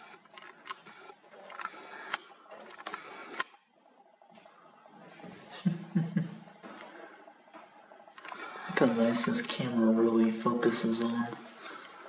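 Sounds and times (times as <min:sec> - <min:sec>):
sharp lens clicks: 0:00.0 - 0:03.6, 0:08.2 - 0:09.4
camera zoom lens motor whirring: 0:00.0 - 0:03.7, 0:07.9 - 0:12.0.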